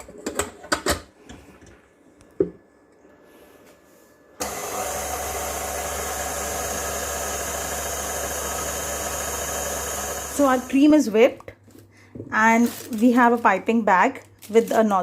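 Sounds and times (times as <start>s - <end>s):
electric beater motor humming: 4.4s - 11.0s.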